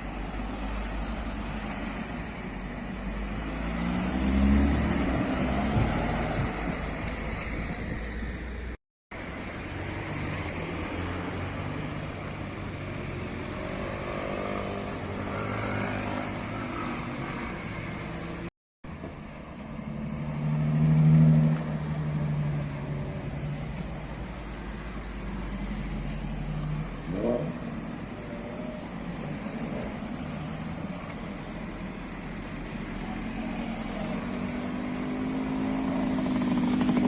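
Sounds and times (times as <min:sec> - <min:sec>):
car engines revving past: 0:03.0 - 0:08.0, 0:09.6 - 0:18.5, 0:19.8 - 0:23.0.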